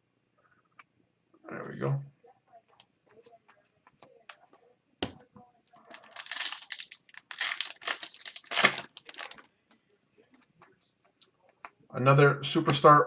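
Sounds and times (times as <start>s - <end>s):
foil wrapper crinkling and tearing: 5.7s - 9.5s.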